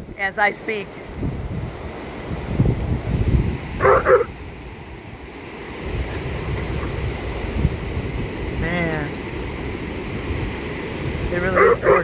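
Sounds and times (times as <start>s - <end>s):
surf: 0.0s - 12.0s
wind noise on microphone: 0.0s - 12.0s
dog barking: 3.8s - 4.3s, 11.5s - 12.0s.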